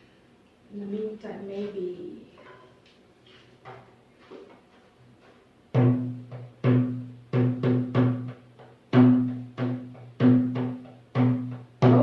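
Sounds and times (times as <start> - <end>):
low pitched drum beats: 5.8 - 12.0.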